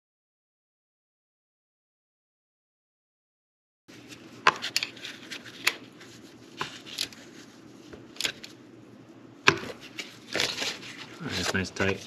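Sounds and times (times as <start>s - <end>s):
low steady hum: 3.9s - 12.0s.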